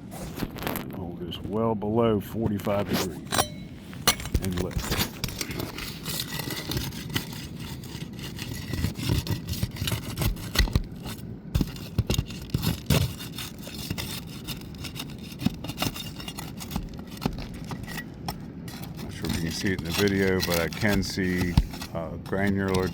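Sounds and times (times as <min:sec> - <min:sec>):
pry bar scraping on shingles: 0:02.7 - 0:22.9
thumps: 0:15.3 - 0:22.9.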